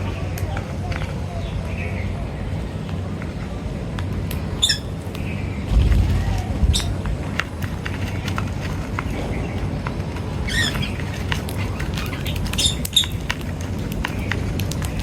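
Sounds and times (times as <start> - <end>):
birds chirping: 0.0 - 15.0
steady low rumble: 1.6 - 10.4.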